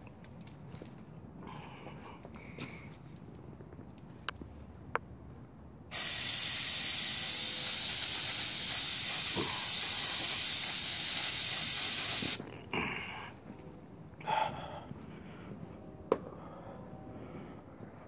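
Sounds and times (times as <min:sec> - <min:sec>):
aerosol spray hiss: 0:05.9 - 0:12.4.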